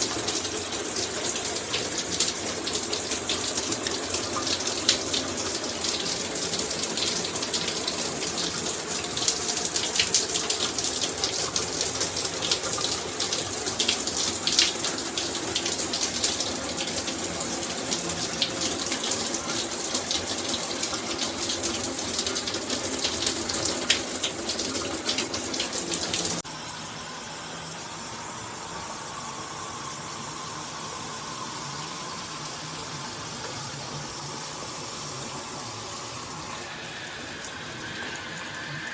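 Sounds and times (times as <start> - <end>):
shower head spraying water: 0.0 - 26.4.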